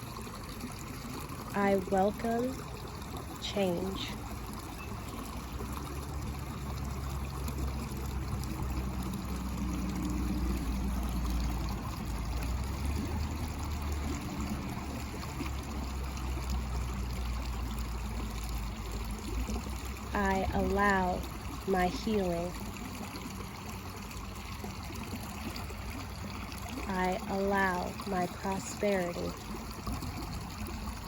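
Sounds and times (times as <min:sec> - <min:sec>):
engine hum: 0:00.0 - 0:31.0
busy street traffic rumble: 0:20.1 - 0:22.6.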